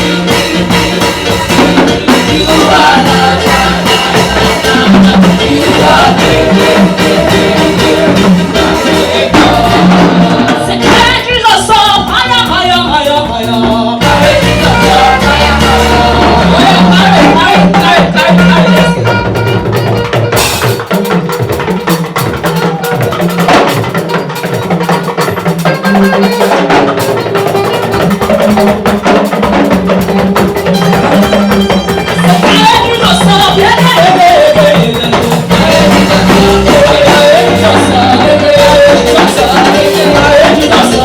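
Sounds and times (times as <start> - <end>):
person singing: 0.0 - 19.3, 30.4 - 41.0
drums and percussion beat: 0.0 - 41.0
upbeat gospel music: 0.0 - 41.0.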